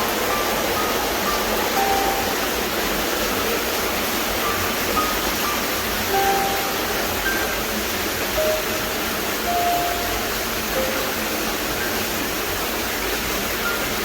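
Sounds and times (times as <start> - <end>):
water rushing in a cave: 0.0 - 14.0.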